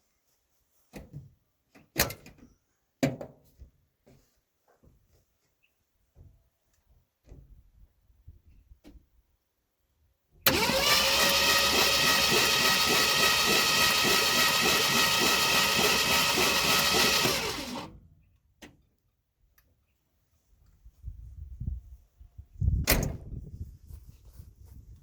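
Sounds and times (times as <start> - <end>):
starter motor cranking engine: 10.5 - 18.0.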